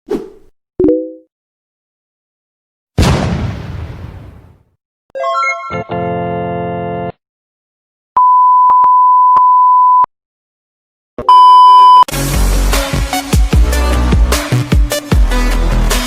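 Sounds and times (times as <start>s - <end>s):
electronic beep: 11.3s - 12.1s.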